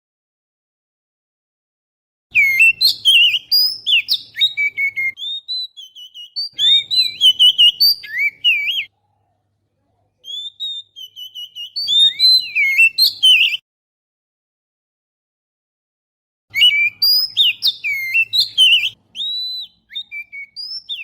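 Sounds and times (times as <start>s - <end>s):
bird song whistles and trills: 2.3s - 8.9s, 10.2s - 13.6s, 16.5s - 21.0s.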